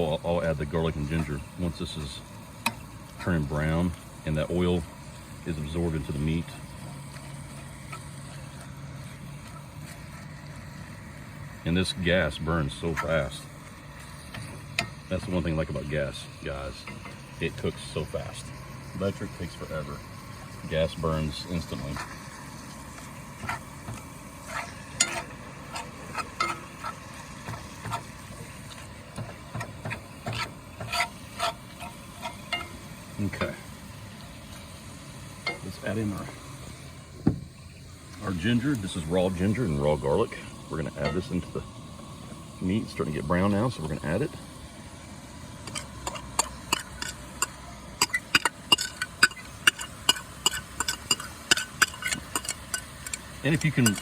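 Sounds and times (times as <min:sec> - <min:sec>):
meat sizzling in a pan: 0:00.0 - 0:54.0
utensil scraping a pan: 0:11.9 - 0:16.2, 0:21.1 - 0:34.7, 0:45.6 - 0:54.0.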